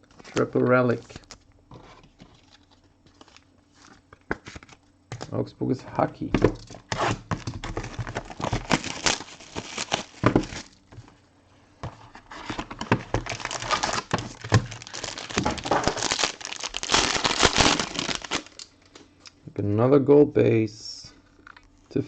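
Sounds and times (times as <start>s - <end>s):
plastic wrapper crinkling and tearing: 6.6s - 10.8s, 12.5s - 19.0s.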